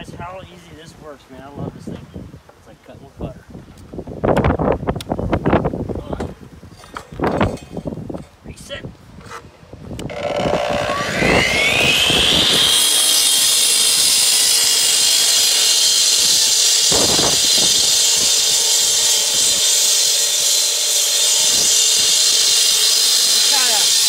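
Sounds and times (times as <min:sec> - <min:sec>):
concrete saw motor whining: 0:10.0 - 0:24.0.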